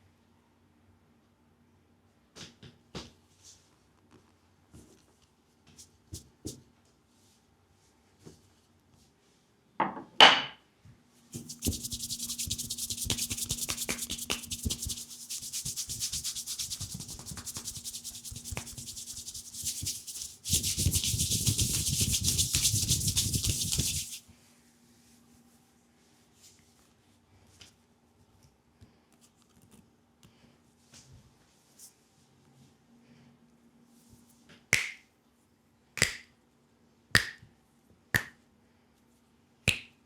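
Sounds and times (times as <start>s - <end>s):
hands rubbing skin: 11.3s - 24.2s.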